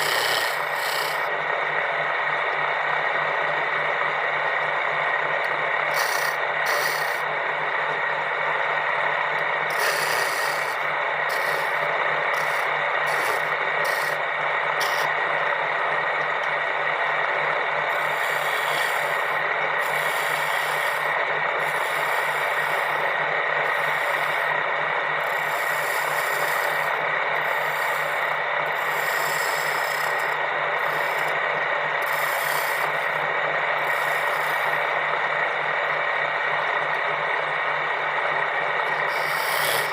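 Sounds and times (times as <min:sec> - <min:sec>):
electric power tool whining: 0:00.0 - 0:01.3, 0:05.9 - 0:07.3, 0:09.6 - 0:15.2, 0:17.9 - 0:24.6, 0:25.2 - 0:33.2, 0:38.8 - 0:39.9
hissing of tool cutting wood: 0:00.0 - 0:01.3, 0:05.9 - 0:07.2, 0:09.7 - 0:11.8, 0:12.4 - 0:14.2, 0:14.8 - 0:15.1, 0:18.0 - 0:23.0, 0:25.2 - 0:31.4, 0:39.0 - 0:39.9.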